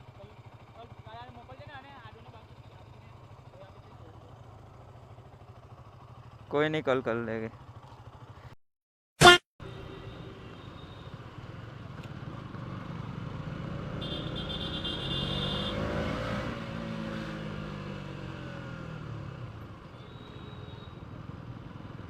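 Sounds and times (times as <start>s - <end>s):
motor vehicle engine: 9.7s - 22.0s.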